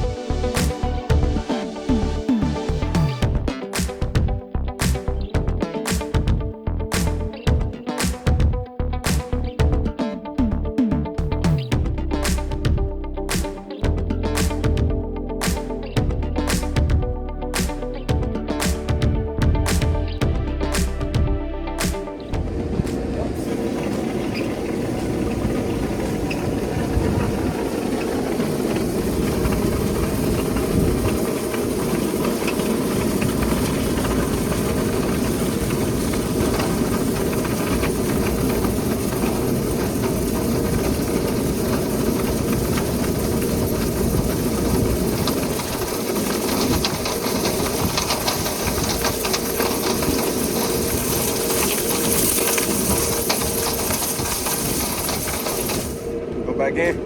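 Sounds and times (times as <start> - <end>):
vent cleaning motor with hiss: 21.8 - 56.2.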